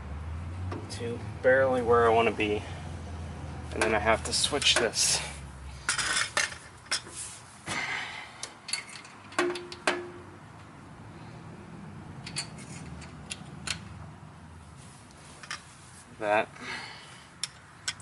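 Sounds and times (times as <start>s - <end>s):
metal tools clinking: 5.9s - 7.1s, 8.7s - 10.2s, 12.2s - 13.8s.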